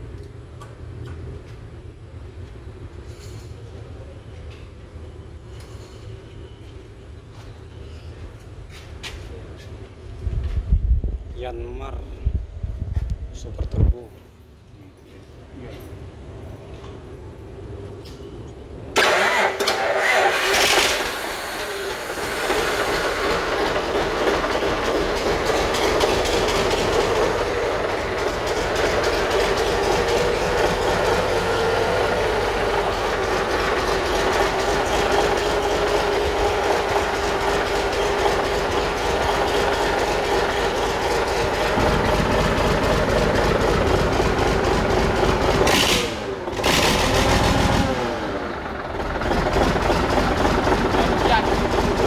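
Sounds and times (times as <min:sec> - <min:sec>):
diesel engine knocking: 0:20.0 - 0:52.0.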